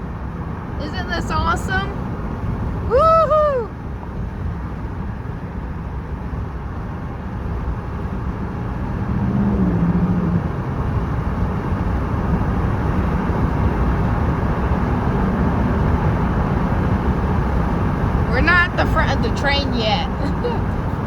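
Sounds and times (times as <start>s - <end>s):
wind through open car window: 0.0s - 21.0s
moving freight train: 14.9s - 21.0s.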